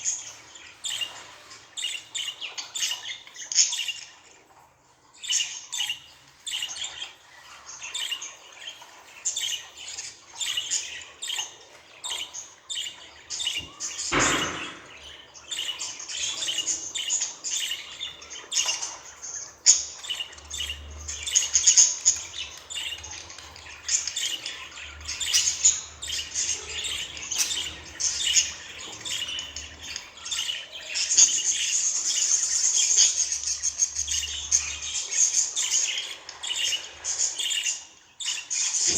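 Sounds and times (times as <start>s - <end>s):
budgerigar chirping and warbling: 19.7s - 35.0s.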